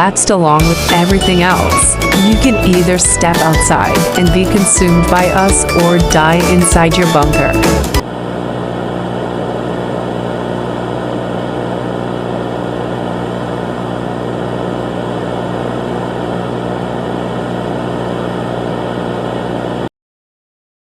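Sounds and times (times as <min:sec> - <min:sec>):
low electronic drone: 0:00.0 - 0:08.2.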